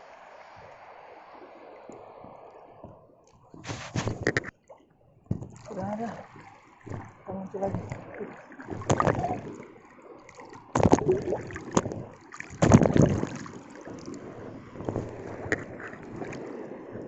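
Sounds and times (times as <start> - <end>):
sea waves splashing: 0.0 - 17.0
wind buffeting microphone: 5.3 - 9.7, 10.7 - 17.0.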